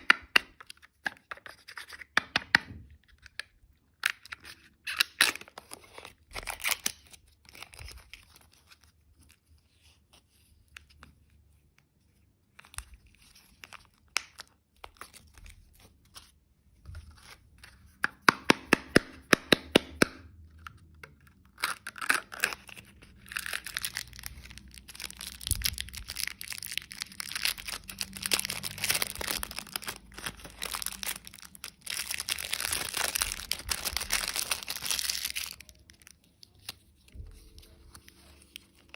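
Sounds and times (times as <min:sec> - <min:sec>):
candy packaging clicks and taps: 0:00.0 - 0:08.0, 0:13.6 - 0:15.4, 0:17.0 - 0:37.3
wrappers crinkling and tearing: 0:04.3 - 0:09.5, 0:21.4 - 0:38.9.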